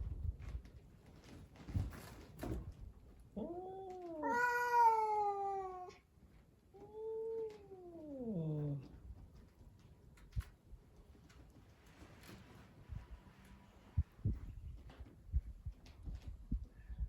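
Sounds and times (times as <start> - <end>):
cat yowling: 3.4 - 6.0.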